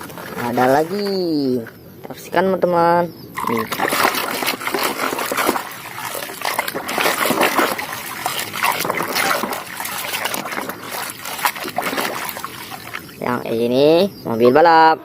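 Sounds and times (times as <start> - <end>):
water splashing and trickling: 0.0 - 1.6, 3.4 - 13.7.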